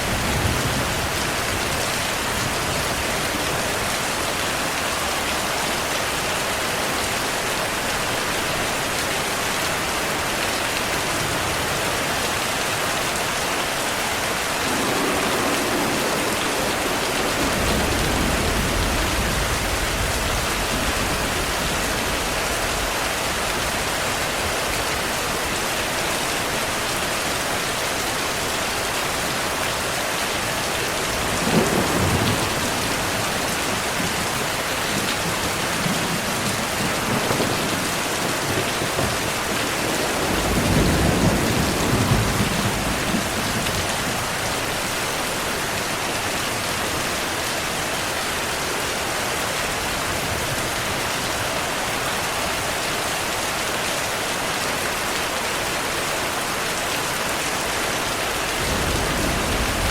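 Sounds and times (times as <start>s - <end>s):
steady rain: 0.0s - 59.9s
thunder rumbling: 14.4s - 23.9s, 31.0s - 44.9s, 58.5s - 59.9s.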